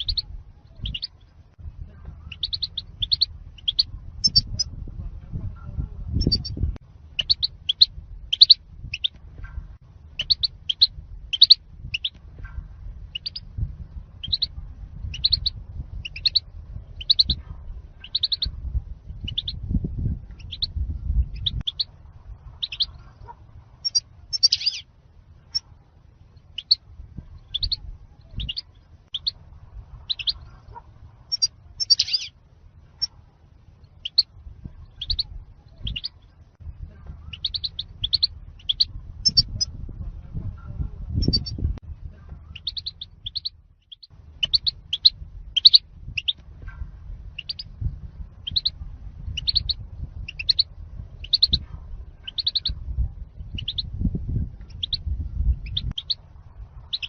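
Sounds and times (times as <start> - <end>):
bird high chirps: 0.0 - 1.3, 2.2 - 4.7, 6.1 - 9.2, 10.2 - 12.2, 13.1 - 13.6, 14.2 - 17.4, 18.0 - 18.6, 19.2 - 24.9, 26.4 - 26.8, 27.4 - 29.4, 30.0 - 33.2, 33.8 - 36.4, 37.2 - 39.8, 41.2 - 41.6, 42.3 - 46.4, 47.4 - 47.8, 48.4 - 52.8, 53.4 - 54.0, 54.6 - 57.0
faint low rumble: 0.0 - 57.0.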